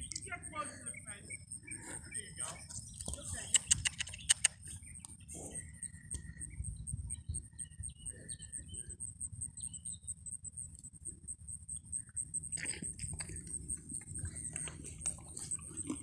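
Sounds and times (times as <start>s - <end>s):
insect high pulsing trill: 0.0s - 16.0s
short chirps and clicks: 3.0s - 5.1s.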